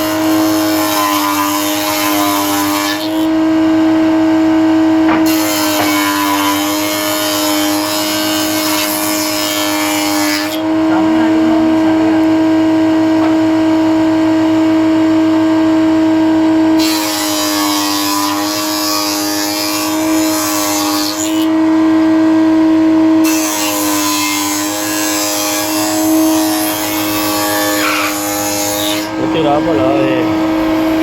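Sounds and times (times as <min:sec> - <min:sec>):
router spindle whine: 0:10.6 - 0:16.8, 0:27.3 - 0:31.0.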